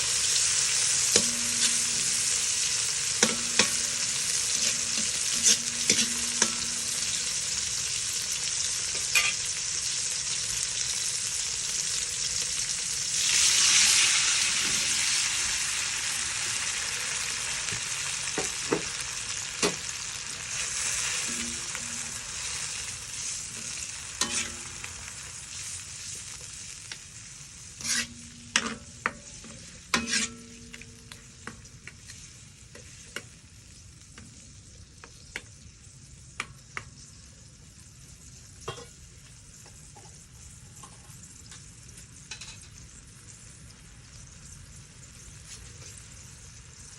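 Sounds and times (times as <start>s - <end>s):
food sizzling in a pan: 0.0s - 46.9s
metal utensil scraping a pan: 0.1s - 8.0s, 8.9s - 9.6s, 19.6s - 26.4s, 27.8s - 33.3s.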